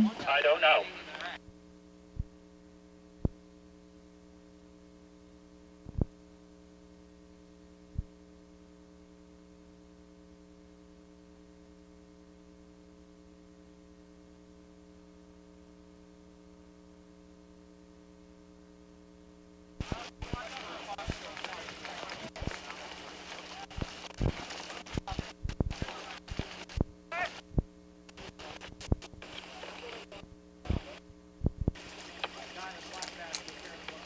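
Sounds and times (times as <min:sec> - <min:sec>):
electrical hum: 0:00.0 - 0:01.4, 0:19.8 - 0:34.0
short clicks: 0:31.7 - 0:34.0.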